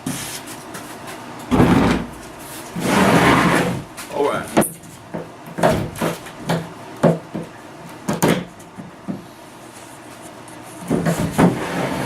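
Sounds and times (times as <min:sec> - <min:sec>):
plywood knocks and thumps: 0:04.6 - 0:07.5.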